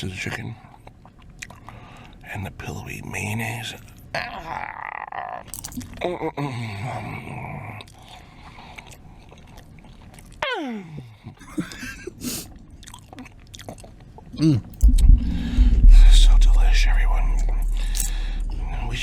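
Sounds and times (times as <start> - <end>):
person chewing food loudly: 0.6 - 2.2, 7.3 - 11.9, 12.5 - 14.9.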